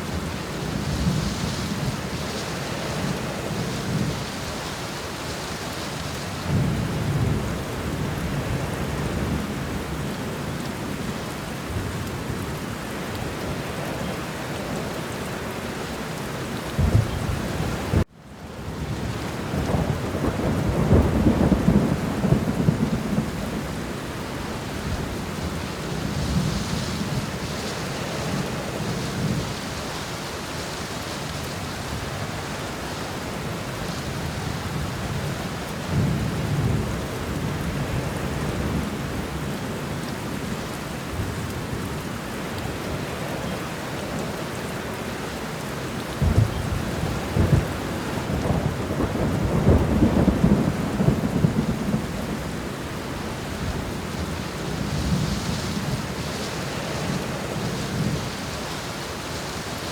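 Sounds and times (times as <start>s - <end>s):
heavy rain falling: 0.0s - 59.9s
thunder rumbling: 16.7s - 18.0s, 18.6s - 29.8s, 46.1s - 59.2s.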